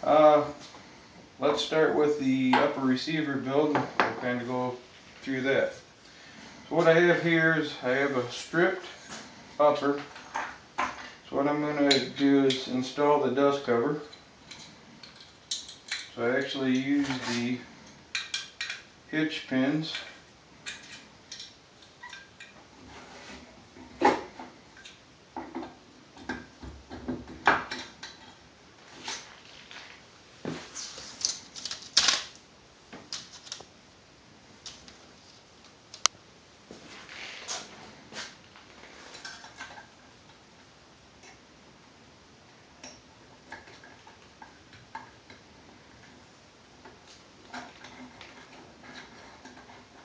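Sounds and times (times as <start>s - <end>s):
small metal parts clicking: 14.1s - 16.2s.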